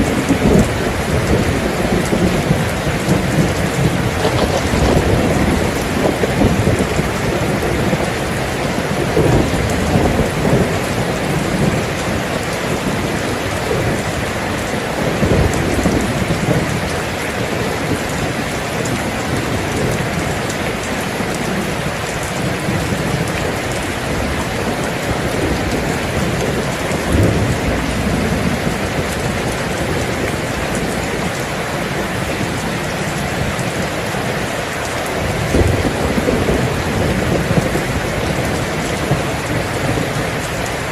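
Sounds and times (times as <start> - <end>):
heavy rain: 0.0 - 40.9
low rumbles: 0.2 - 8.0.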